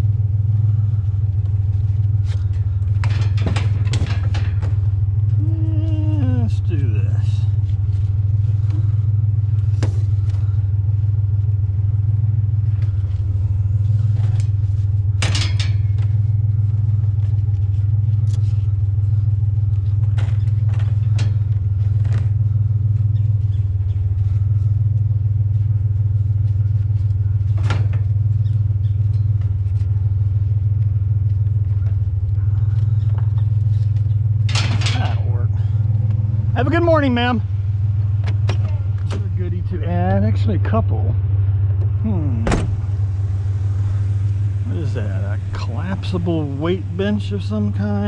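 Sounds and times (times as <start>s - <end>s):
truck engine humming: 0.0s - 48.0s
metal clanks and knocks: 1.4s - 5.4s, 13.9s - 17.6s, 19.5s - 22.6s, 31.8s - 37.3s.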